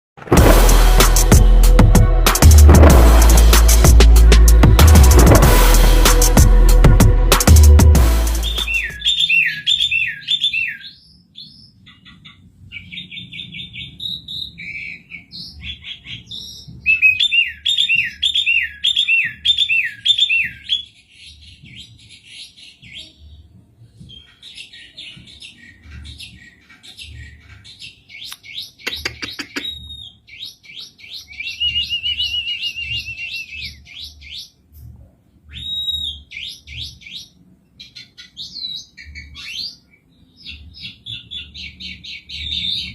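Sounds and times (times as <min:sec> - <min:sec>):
starling singing: 0:07.4 - 0:23.4, 0:24.1 - 0:34.6, 0:35.5 - 0:42.9.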